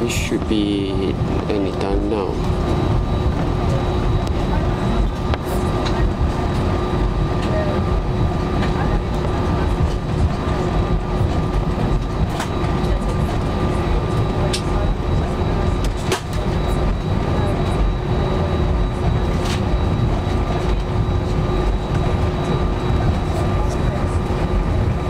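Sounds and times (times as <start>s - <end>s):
aircraft cabin rumble: 0.0s - 25.0s
constant hum: 0.0s - 25.0s
faint steady whine: 0.0s - 25.0s.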